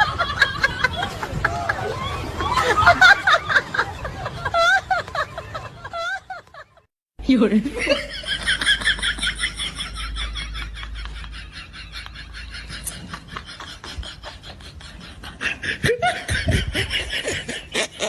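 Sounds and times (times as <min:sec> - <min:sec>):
high-pitched laughing: 0:07.8 - 0:18.0.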